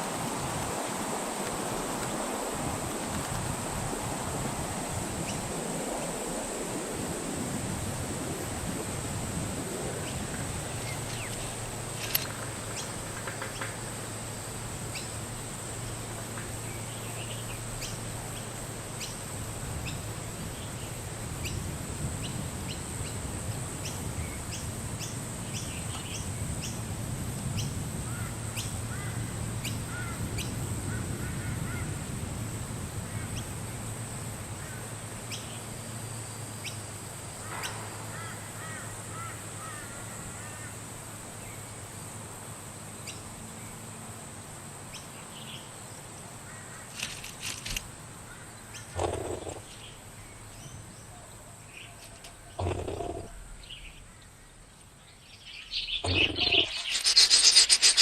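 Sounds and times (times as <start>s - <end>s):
bird calls and chirps: 55.1s - 58.0s
high-pitched hiss: 55.2s - 58.0s
low hum: 56.0s - 58.0s.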